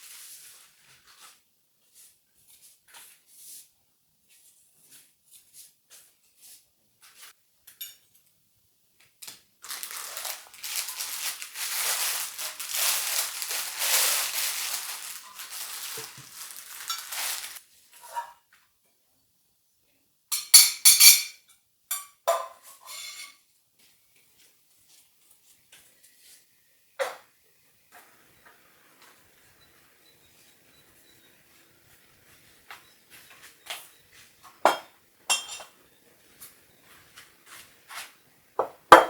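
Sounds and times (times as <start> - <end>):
metal utensils clinking: 10.7 - 18.3, 20.3 - 23.4, 34.7 - 35.8.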